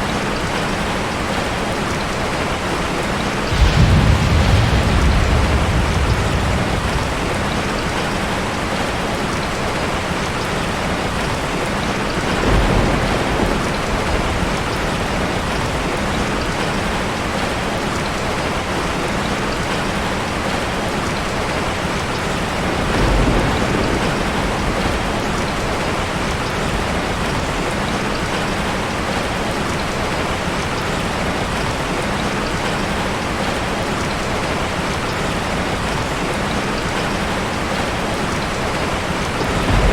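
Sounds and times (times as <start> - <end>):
steady rain falling: 0.0 - 39.9
low rumbles of thunder: 3.2 - 10.0, 10.7 - 18.1, 22.2 - 29.4, 36.8 - 39.9.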